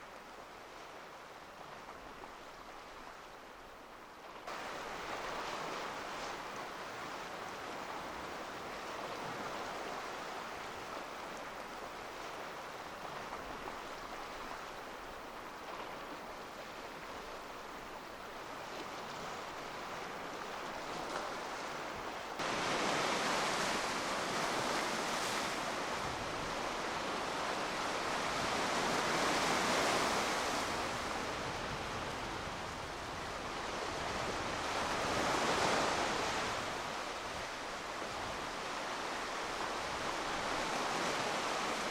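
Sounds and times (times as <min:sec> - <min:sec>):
waves washing against shore: 0:04.4 - 0:41.9.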